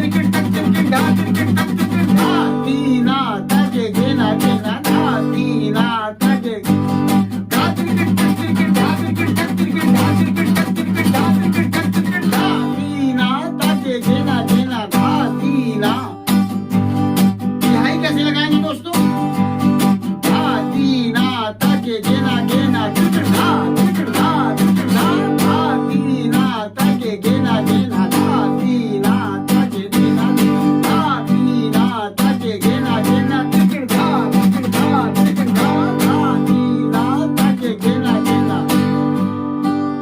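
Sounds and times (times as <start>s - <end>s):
acoustic guitar strumming: 0.0s - 40.0s.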